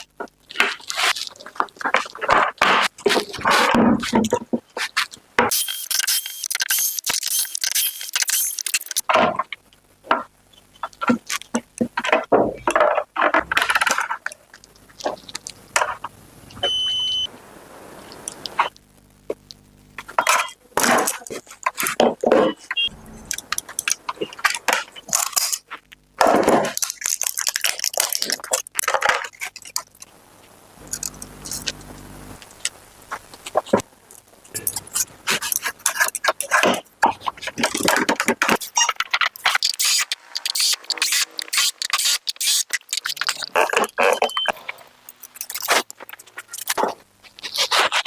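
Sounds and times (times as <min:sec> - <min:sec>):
high beep: 0:16.6 - 0:17.3
low steady hum: 0:22.4 - 0:27.8
small hard parts clattering: 0:34.5 - 0:44.5.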